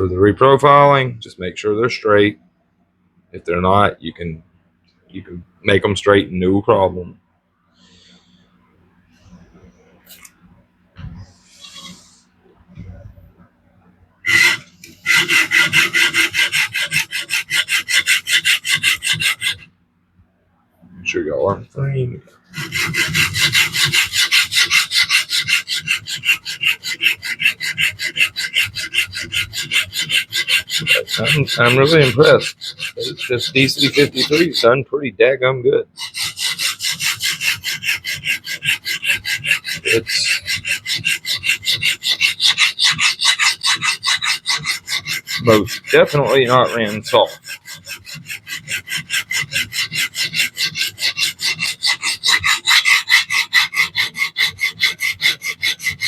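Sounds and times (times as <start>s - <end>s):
sharpening plate rasping on knife: 11.6s - 12.1s, 14.3s - 19.7s, 22.6s - 34.6s, 36.0s - 56.0s.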